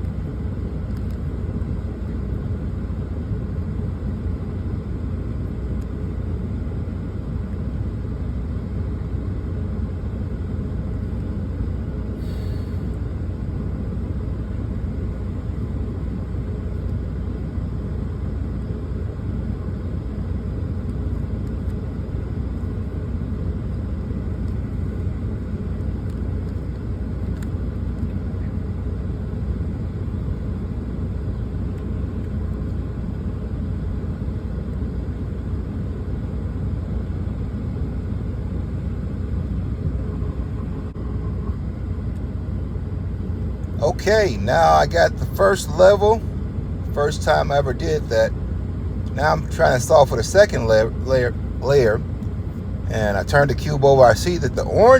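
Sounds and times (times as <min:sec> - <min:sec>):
truck engine rumble from cab: 0:00.0 - 0:54.9.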